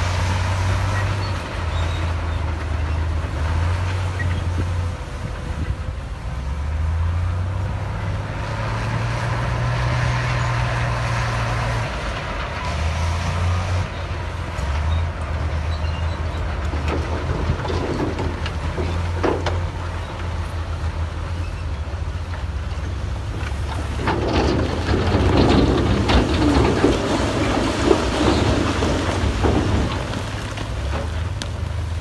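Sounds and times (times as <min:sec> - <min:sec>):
heavy diesel engine under load: 0:00.0 - 0:32.0.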